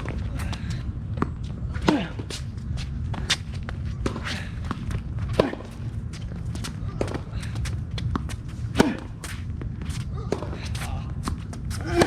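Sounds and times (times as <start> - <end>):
low background rumble: 0.0 - 12.0
racket striking tennis ball: 4.0 - 5.7, 8.2 - 9.4.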